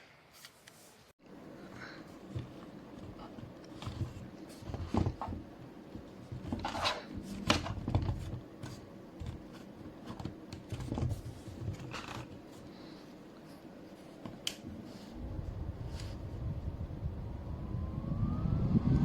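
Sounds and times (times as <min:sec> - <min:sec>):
objects being handled: 0:00.4 - 0:15.2.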